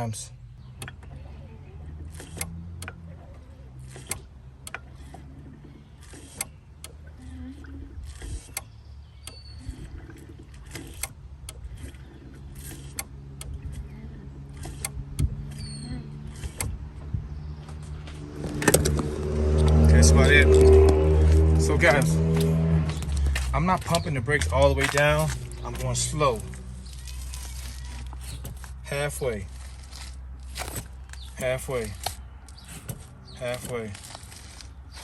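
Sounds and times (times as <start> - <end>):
sharp clicks and light knocks: 0.7 - 1.2, 16.3 - 19.8
high squeaks: 13.6 - 16.7, 21.6 - 35.0.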